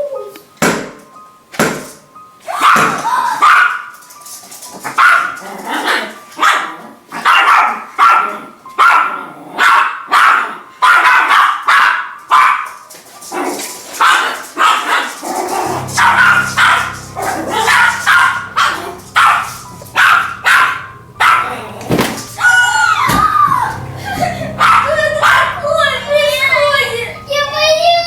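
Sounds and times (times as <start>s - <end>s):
dog barking: 2.5s - 3.9s, 5.0s - 12.8s, 13.4s - 23.0s, 24.6s - 25.6s
low steady hum: 15.6s - 28.0s.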